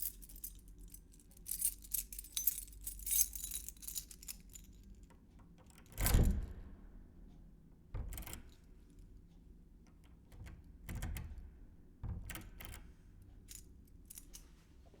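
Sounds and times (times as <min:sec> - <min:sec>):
metal keys jingling: 0:00.0 - 0:05.0, 0:13.4 - 0:14.5.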